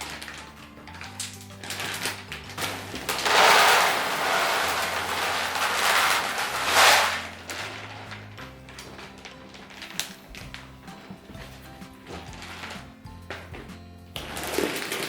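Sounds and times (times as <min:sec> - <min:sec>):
shower spraying water: 0:02.6 - 0:08.0.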